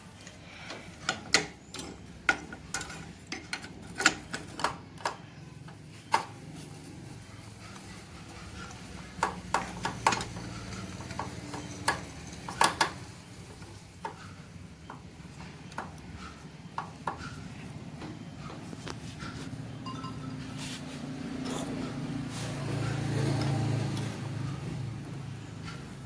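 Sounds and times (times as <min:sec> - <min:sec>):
metal tools clinking: 0:01.0 - 0:04.7, 0:19.2 - 0:20.6.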